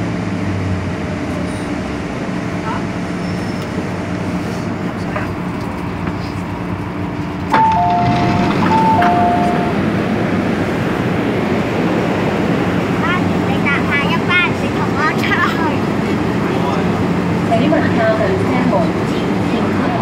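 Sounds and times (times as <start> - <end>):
metro car interior hum: 7.5 - 10.6
two-tone electronic chime: 7.6 - 9.8.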